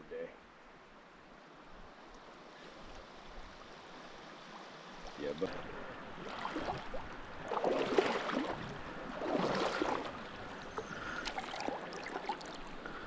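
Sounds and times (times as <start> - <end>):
water splashing beside kayak: 3.9 - 13.0.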